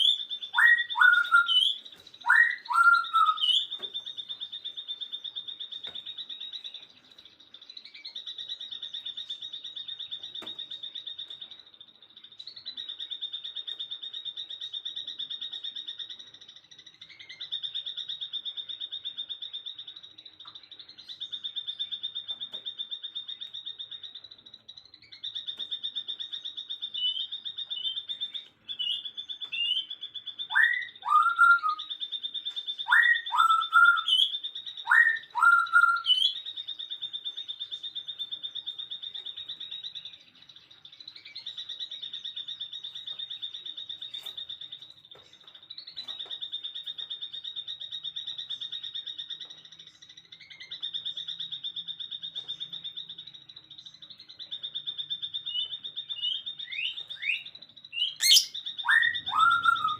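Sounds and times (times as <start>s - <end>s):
downward-sweeping whistles: 0.0s - 4.1s, 30.5s - 31.9s, 58.0s - 59.9s
birds calling: 0.0s - 59.9s
short rising bird notes: 58.2s - 59.9s.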